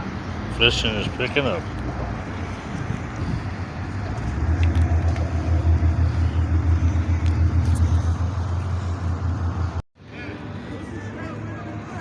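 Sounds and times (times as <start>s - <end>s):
engine throbbing: 0.6s - 9.8s.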